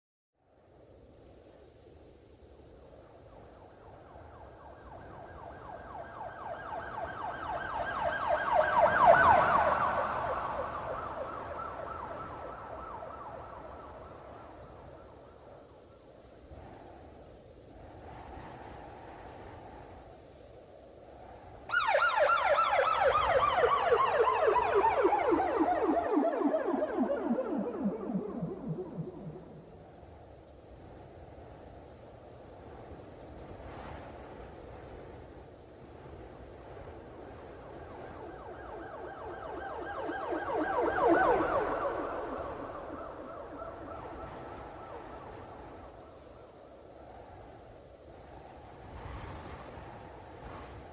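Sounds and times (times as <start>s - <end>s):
police siren yelping: 6.6s - 13.8s, 21.7s - 29.7s, 38.4s - 45.4s
faint low rumble: 24.4s - 30.7s.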